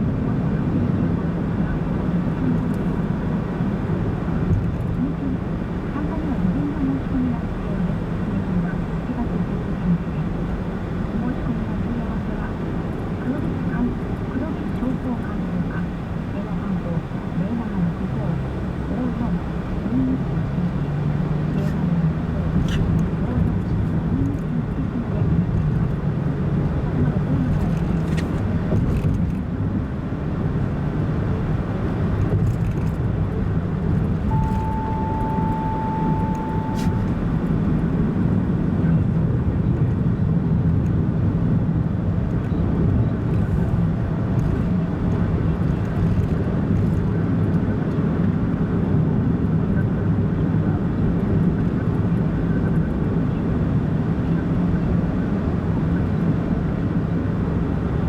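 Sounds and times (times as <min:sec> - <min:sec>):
car engine and road noise: 0:00.0 - 0:58.0
steady single-pitch tone: 0:34.3 - 0:38.0.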